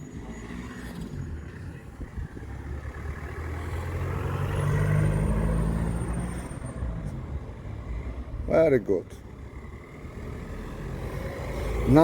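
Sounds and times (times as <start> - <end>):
vehicle driving past: 2.3 - 7.2.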